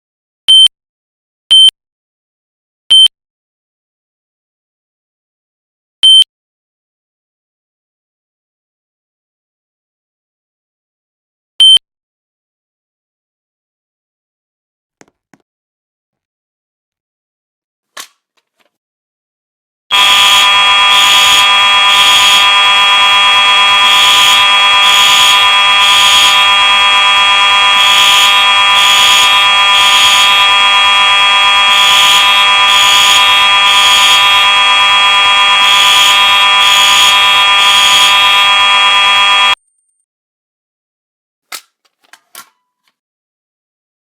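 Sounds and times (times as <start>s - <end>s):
pulsing alarm signal bursts: 19.9s - 39.6s
steady buzzing fire alarm horn: 19.9s - 39.6s.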